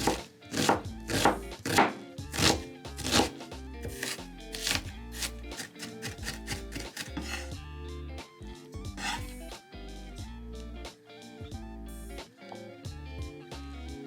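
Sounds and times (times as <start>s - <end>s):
knife cutting on a cutting board: 0.0s - 7.5s, 9.0s - 9.4s
background music: 0.0s - 14.0s.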